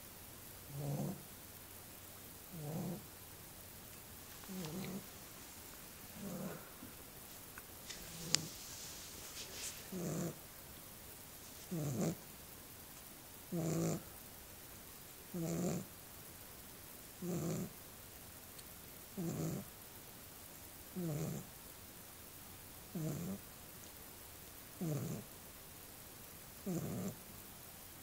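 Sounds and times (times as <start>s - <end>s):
small dog snoring: 0.7s - 1.3s, 2.5s - 3.1s, 4.4s - 5.1s, 6.1s - 7.0s, 7.9s - 10.4s, 11.6s - 12.2s, 13.5s - 14.1s, 15.3s - 15.9s, 17.2s - 17.8s, 19.1s - 19.7s, 20.9s - 21.5s, 22.9s - 23.4s, 24.8s - 25.3s, 26.6s - 27.2s.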